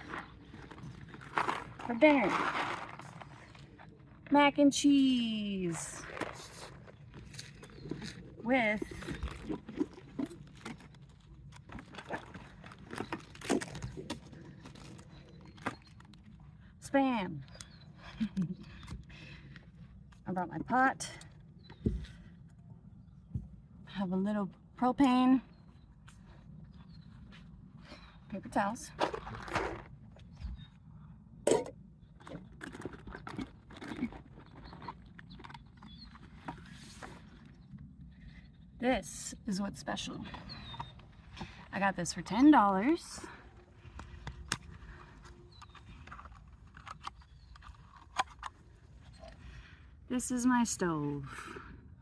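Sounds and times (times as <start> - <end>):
rummaging through a bag: 0.0 - 4.3, 5.5 - 16.6, 31.5 - 37.7, 42.8 - 49.4.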